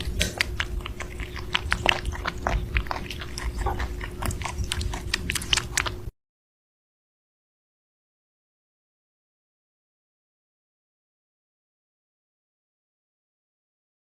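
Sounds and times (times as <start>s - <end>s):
pet chewing and crunching: 0.0s - 6.1s
steady hum: 0.0s - 6.1s.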